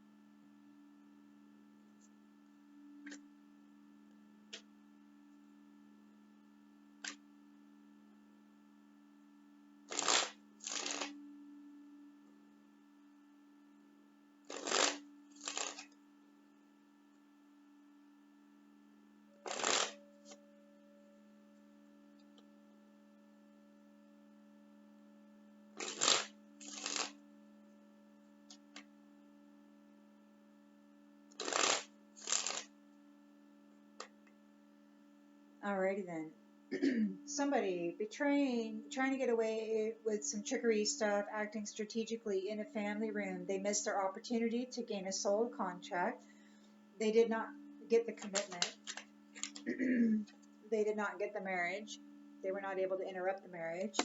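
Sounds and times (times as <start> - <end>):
low electrical hum: 0.0 - 54.0
cards being shuffled: 9.9 - 11.1, 14.5 - 15.9, 19.5 - 20.0, 25.8 - 27.1, 31.4 - 32.7.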